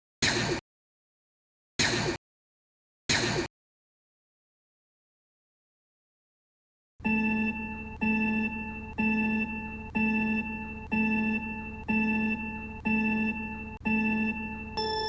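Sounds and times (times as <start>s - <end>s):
electronic alarm tone: 7.0s - 15.0s.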